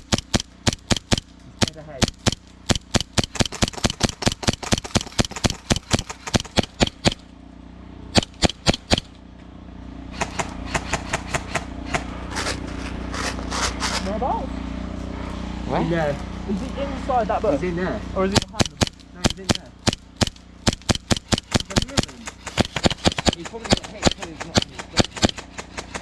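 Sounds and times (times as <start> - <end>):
airsoft guns firing: 0.0 - 7.3, 8.1 - 9.2, 10.1 - 12.6, 18.3 - 26.0.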